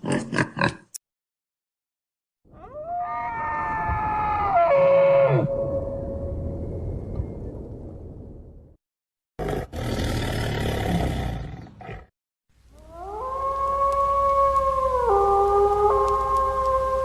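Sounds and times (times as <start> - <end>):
long wailing tone: 2.6 - 7.6, 12.8 - 17.0.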